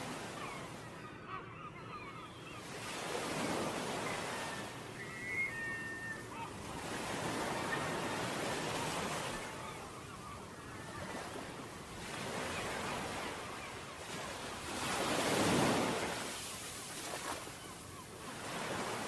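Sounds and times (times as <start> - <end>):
ocean surf on beach: 2.7 - 19.0
faint high chirp: 4.0 - 6.5.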